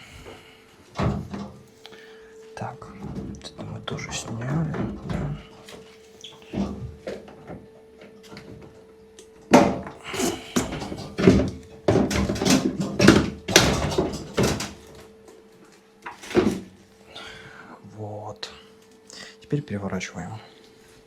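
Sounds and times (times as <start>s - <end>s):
loud clunks and knocks: 9.5s - 14.8s.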